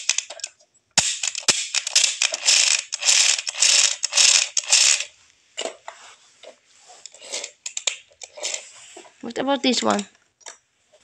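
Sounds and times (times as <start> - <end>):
plastic toy parts rattling: 0.0 - 5.8, 7.1 - 8.7, 9.5 - 10.6.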